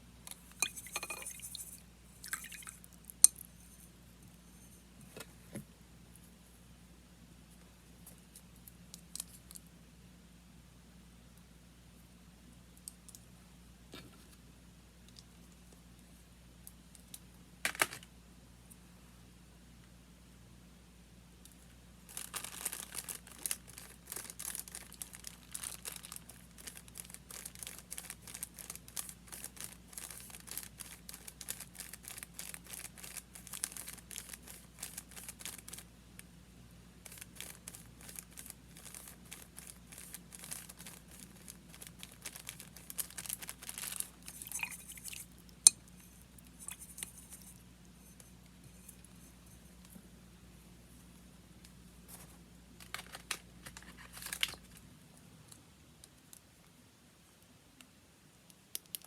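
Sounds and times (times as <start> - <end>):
paper crinkling and rustling: 22.1 - 35.8, 37.0 - 45.2, 52.1 - 54.8.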